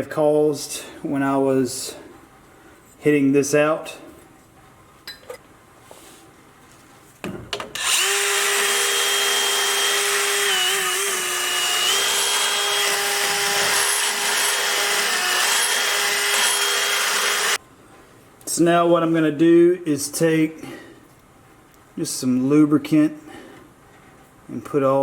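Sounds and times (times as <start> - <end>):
power grinder whining on metal: 7.8 - 17.6.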